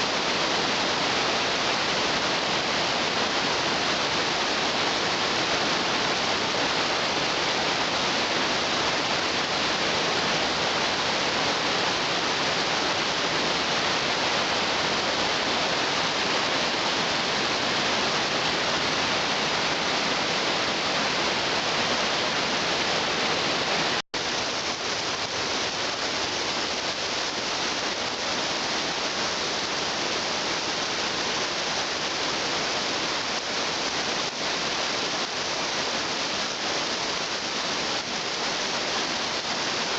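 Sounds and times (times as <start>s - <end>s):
waterfall rushing: 0.0s - 39.9s.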